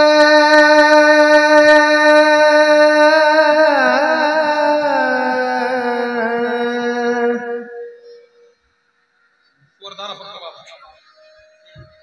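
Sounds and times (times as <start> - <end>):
person singing devotional song: 0.0 - 8.4.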